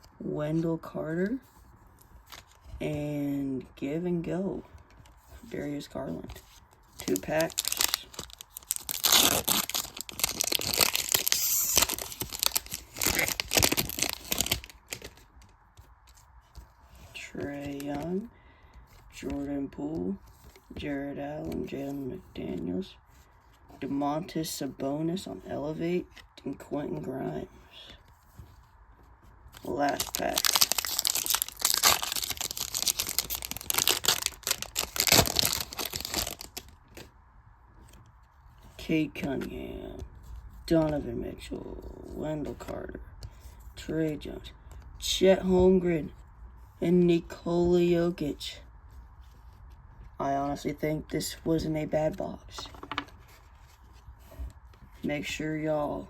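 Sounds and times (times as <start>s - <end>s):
card pack wrappers tearing: 7.0s - 15.5s, 17.3s - 18.0s, 29.6s - 37.0s.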